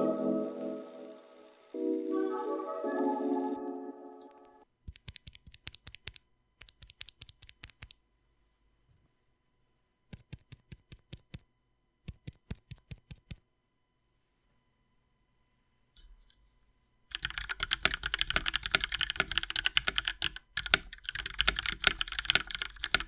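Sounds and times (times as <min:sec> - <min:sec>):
mechanical keyboard typing: 0:04.9 - 0:08.0, 0:10.1 - 0:11.4, 0:12.1 - 0:13.4, 0:17.1 - 0:23.0.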